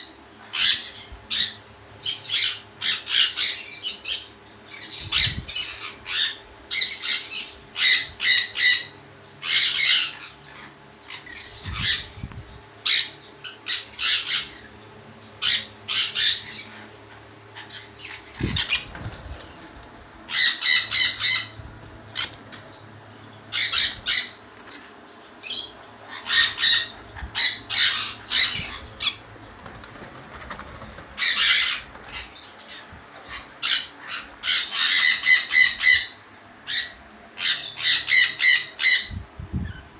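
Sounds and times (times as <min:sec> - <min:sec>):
parrots screeching: 0:00.4 - 0:14.8, 0:15.4 - 0:19.2, 0:20.3 - 0:22.5, 0:23.5 - 0:24.8, 0:25.4 - 0:29.8, 0:30.4 - 0:39.8
wing flapping: 0:18.4 - 0:20.2, 0:29.0 - 0:32.4.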